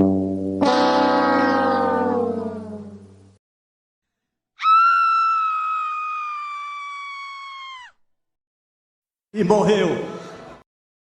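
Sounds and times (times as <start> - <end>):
high-pitched scream: 4.6 - 8.0.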